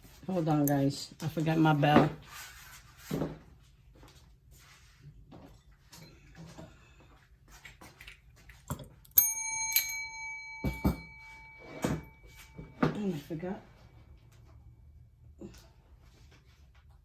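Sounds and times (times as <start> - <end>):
bell ringing: 9.1 - 13.3.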